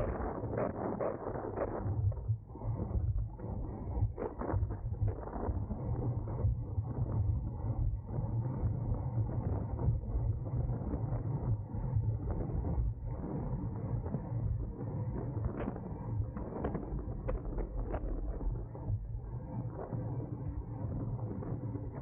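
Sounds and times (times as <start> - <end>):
wind rushing over microphone: 0.0 - 2.1.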